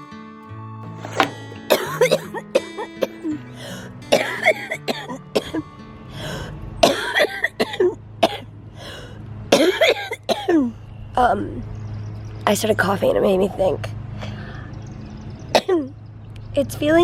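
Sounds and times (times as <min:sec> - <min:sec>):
background music with held notes: 0:00.0 - 0:08.2
woman coughing harshly: 0:01.2 - 0:03.4, 0:04.1 - 0:05.6, 0:06.8 - 0:08.5, 0:09.5 - 0:10.7, 0:15.6 - 0:15.9
woman clearing throat: 0:04.1 - 0:05.6, 0:06.8 - 0:08.4, 0:09.6 - 0:10.6.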